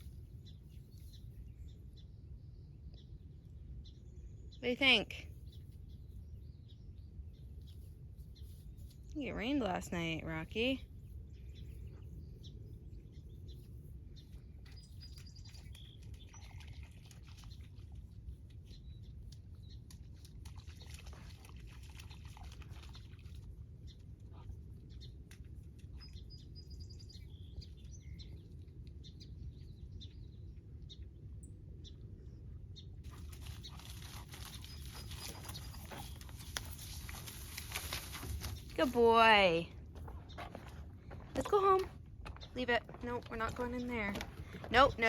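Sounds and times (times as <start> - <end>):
light clicks and patter: 14.2 - 26.4, 33.1 - 39.0, 39.9 - 45.0
birds chirping faintly: 23.8 - 45.0.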